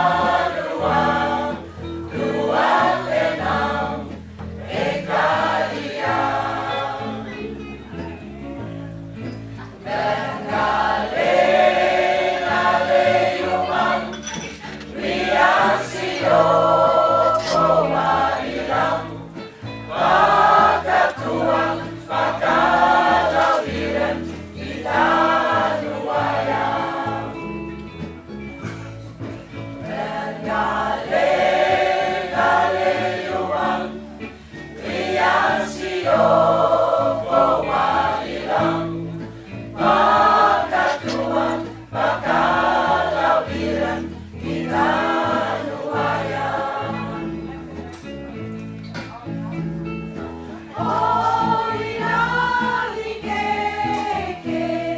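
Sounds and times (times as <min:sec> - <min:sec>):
choir singing: 0:00.0 - 0:07.6, 0:09.8 - 0:27.7, 0:29.8 - 0:47.5, 0:50.7 - 0:54.9
accompaniment with bass line: 0:00.0 - 0:54.9.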